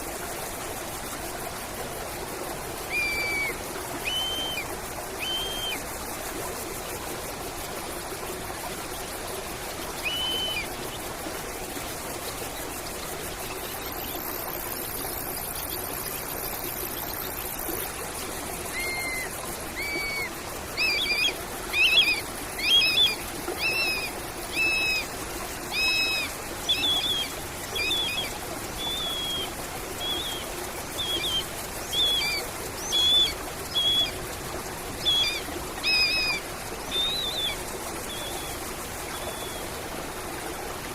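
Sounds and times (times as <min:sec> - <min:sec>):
running water: 0:00.0 - 0:40.9
birdsong: 0:31.0 - 0:34.2.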